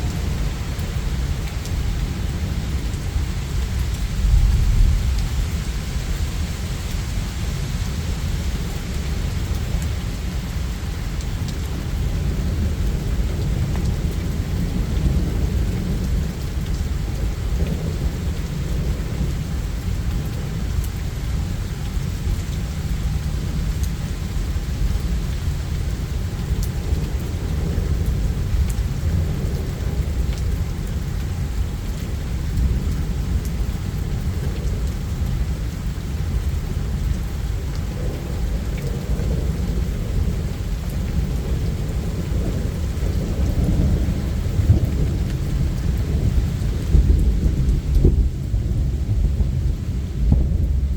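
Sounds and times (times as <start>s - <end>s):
raindrop ticks: 0.0s - 5.4s, 8.7s - 49.6s, 50.2s - 50.9s
heavy rain: 0.0s - 50.9s
thunder rumbling: 26.3s - 50.9s.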